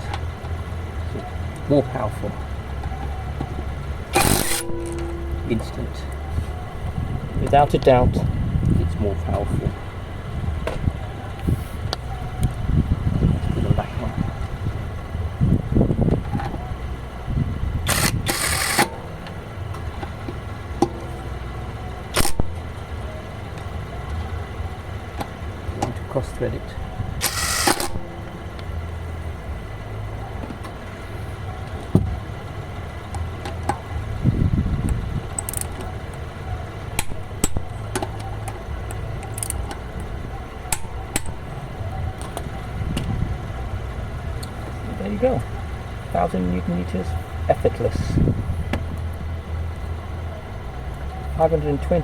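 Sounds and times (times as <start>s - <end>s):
low steady rumble: 0.0s - 52.0s
steady low hum: 0.0s - 52.0s
impact wrench bursts: 4.1s - 5.6s, 17.8s - 19.1s, 22.1s - 22.5s, 27.2s - 28.1s
metal bolts and tools clinking: 39.2s - 39.8s.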